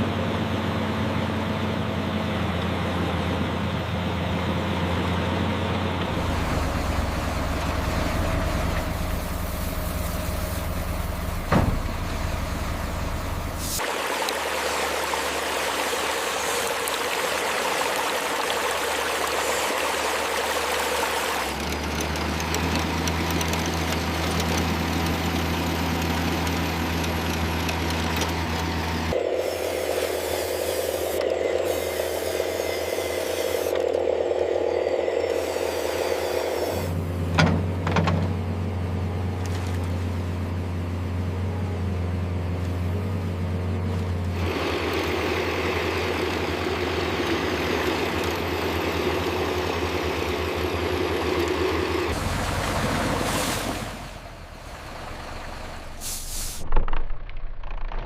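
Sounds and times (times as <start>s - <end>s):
running water rushing: 13.6s - 23.0s, 44.4s - 55.4s
small electric motors whirring: 19.3s - 37.0s.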